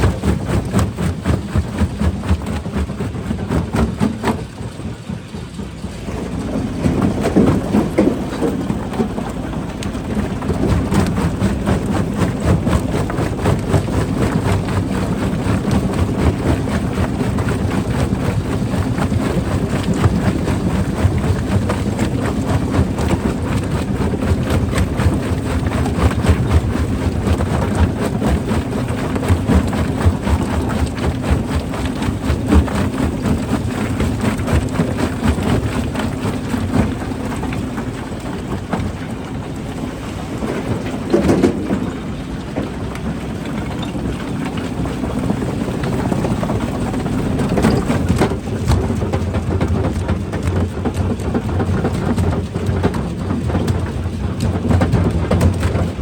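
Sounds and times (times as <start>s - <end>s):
heavy machine rumble: 0.0s - 56.0s
rocks clattering and cracking: 5.5s - 13.9s.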